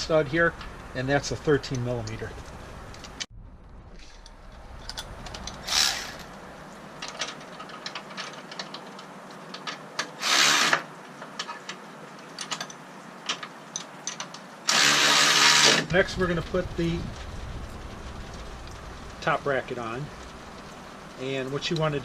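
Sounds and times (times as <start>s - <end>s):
ratchet rasps: 4.0s - 6.4s, 10.1s - 10.9s, 14.1s - 15.9s.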